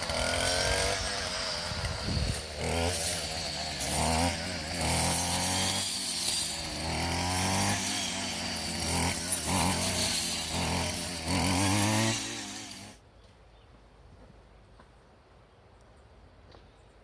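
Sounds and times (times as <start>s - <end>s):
chainsaw revving cutting wood: 0.0s - 13.0s.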